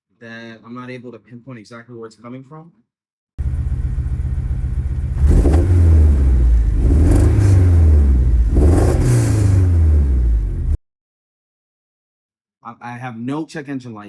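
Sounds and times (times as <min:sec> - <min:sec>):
car engine idling and revving: 0:03.4 - 0:10.8.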